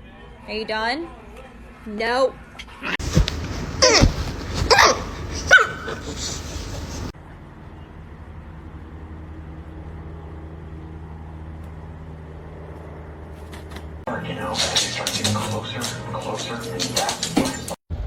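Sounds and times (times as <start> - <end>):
steady low hum: 3.0 - 7.1
dog yelping and whining: 3.7 - 7.1.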